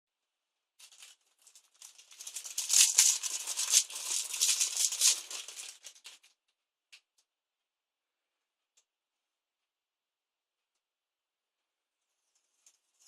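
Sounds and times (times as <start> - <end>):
plastic packaging crinkling: 0.8 - 6.3.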